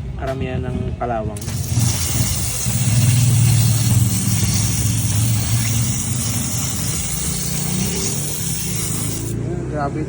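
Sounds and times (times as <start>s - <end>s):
pressure washer motor hum: 1.4s - 9.4s
water spray hissing: 1.4s - 9.4s.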